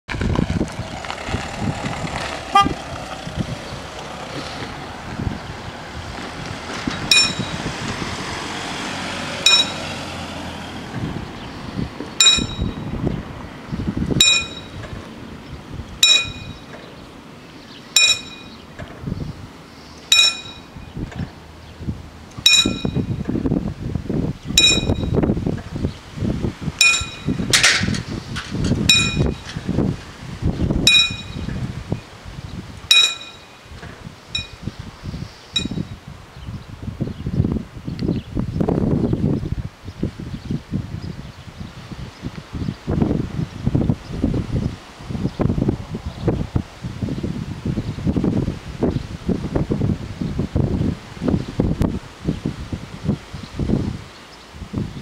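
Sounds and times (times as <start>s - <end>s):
wind noise on microphone: 0.0s - 55.0s
level crossing bell ringing: 12.2s - 12.8s, 14.2s - 14.8s, 18.0s - 18.6s, 30.9s - 31.5s.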